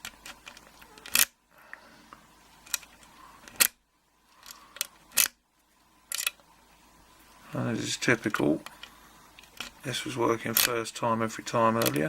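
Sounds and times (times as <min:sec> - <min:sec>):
lock pick metallic clicks: 0:06.1 - 0:06.4.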